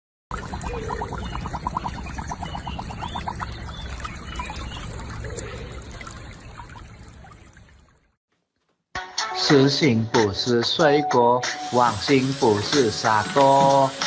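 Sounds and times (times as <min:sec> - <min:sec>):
short gurgles: 0:00.3 - 0:07.8
liquid pouring and trickling: 0:00.3 - 0:08.2, 0:11.5 - 0:14.0.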